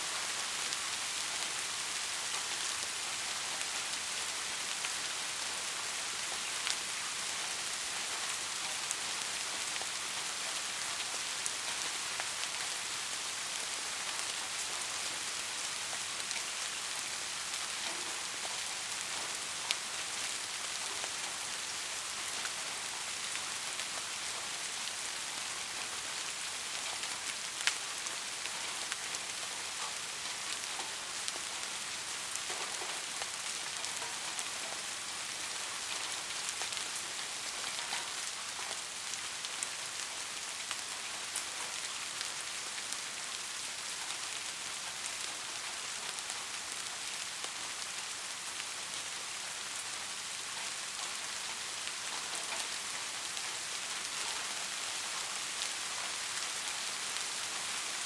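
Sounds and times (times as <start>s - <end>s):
heavy rain hiss: 0.0s - 58.0s
raindrops ticking: 26.3s - 42.9s.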